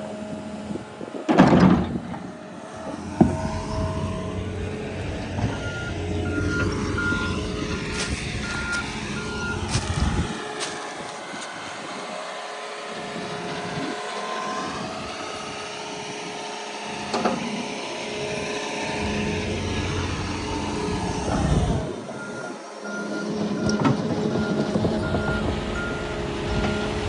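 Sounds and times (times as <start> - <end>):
heavy machine engine running: 0.0 - 27.0
backup alarm beeping: 5.5 - 10.4, 22.2 - 23.8.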